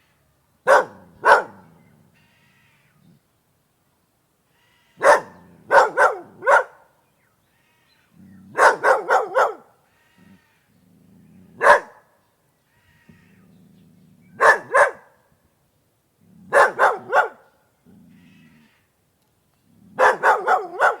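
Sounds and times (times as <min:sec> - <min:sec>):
dog barking: 0:00.6 - 0:01.7, 0:05.0 - 0:06.9, 0:08.5 - 0:09.7, 0:11.6 - 0:12.1, 0:14.4 - 0:15.2, 0:16.5 - 0:17.5, 0:20.0 - 0:21.0.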